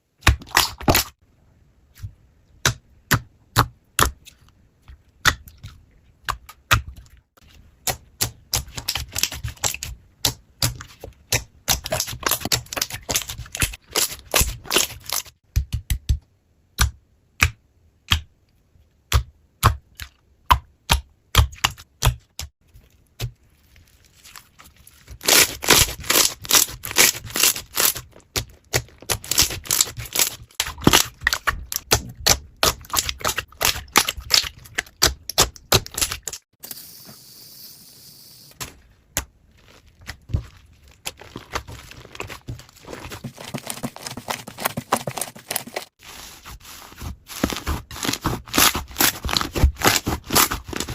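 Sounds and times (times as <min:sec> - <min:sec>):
slime clicking and crackling: 0:25.0 - 0:36.4.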